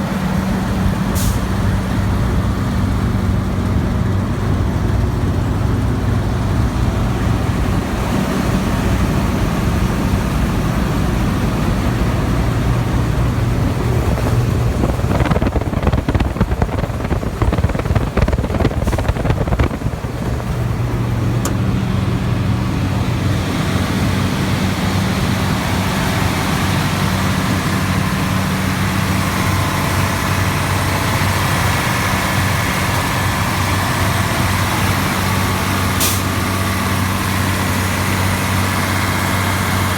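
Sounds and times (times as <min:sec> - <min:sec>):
diesel engine idling: 0:00.0 - 0:39.9
loud irregular noise: 0:00.0 - 0:39.9.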